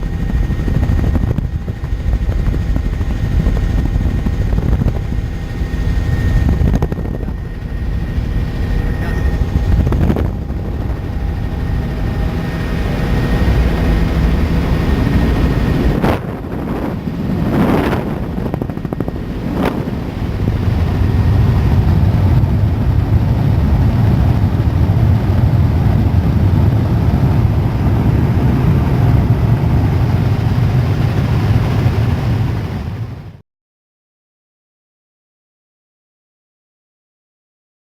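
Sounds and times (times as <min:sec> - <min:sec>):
faint high whine: 0:00.0 - 0:24.8
helicopter drone: 0:00.0 - 0:33.4.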